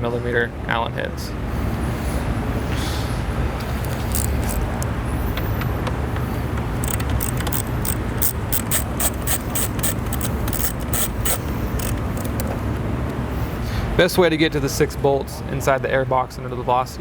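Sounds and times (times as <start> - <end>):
metallic clicks of hand tools: 3.7 - 13.2.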